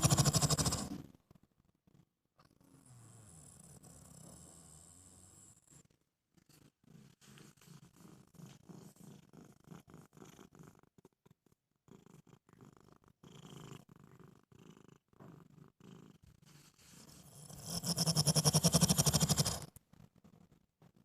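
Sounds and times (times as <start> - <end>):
woman snoring faintly: 0.0 - 1.0, 16.9 - 19.7.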